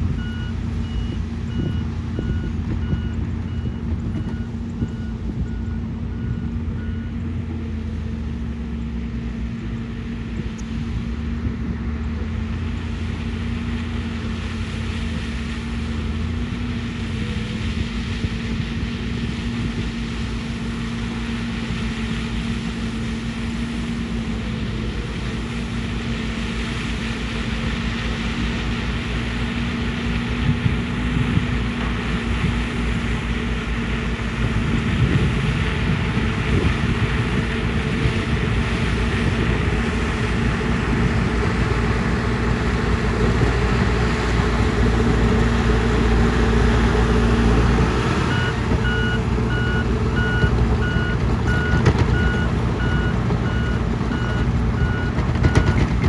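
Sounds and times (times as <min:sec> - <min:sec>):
diesel engine running: 0:00.0 - 0:56.0
reversing alarm beeping: 0:00.2 - 0:07.1, 0:48.3 - 0:55.9
grinding and clatter: 0:50.4 - 0:56.0.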